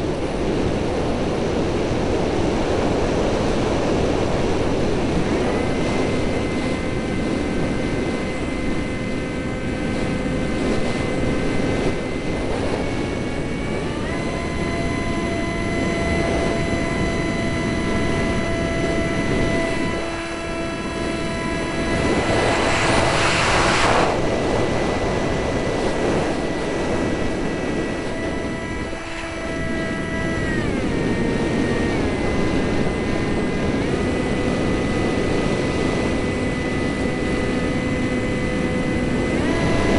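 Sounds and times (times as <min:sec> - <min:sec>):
jet engines whining: 0:00.0 - 0:39.9
loud rushing noise: 0:18.1 - 0:29.9.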